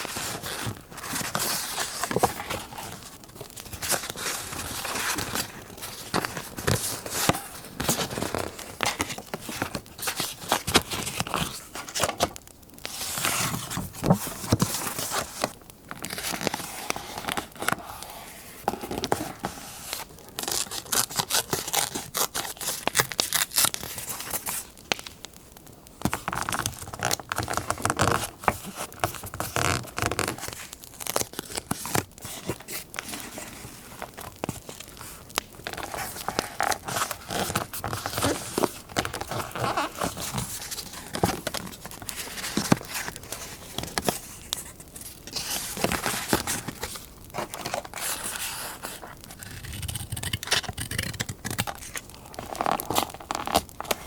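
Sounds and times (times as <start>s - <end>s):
paper tearing and crinkling: 26.2s - 54.0s.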